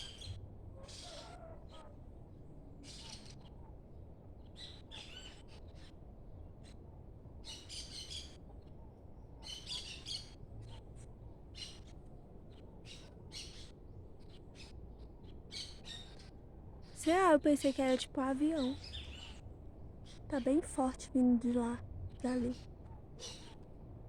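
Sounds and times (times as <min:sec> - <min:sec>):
birds chirping: 0:00.0 - 0:02.0, 0:07.4 - 0:19.4, 0:20.0 - 0:23.7.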